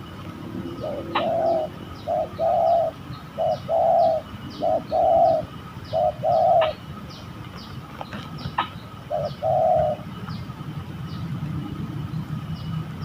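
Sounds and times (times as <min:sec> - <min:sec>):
dove cooing: 0:00.0 - 0:06.9, 0:08.0 - 0:10.2
small birds chirping: 0:00.0 - 0:13.0.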